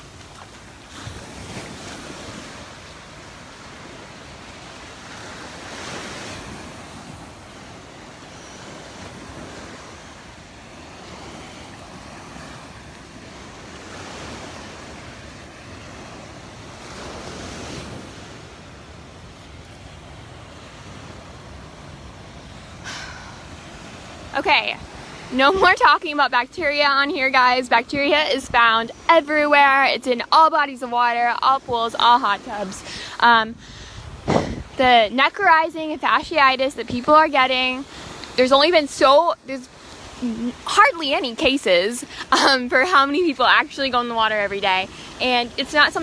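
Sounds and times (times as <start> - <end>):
surf breaking on beach: 0.0 - 46.0
wind on microphone: 31.6 - 42.2.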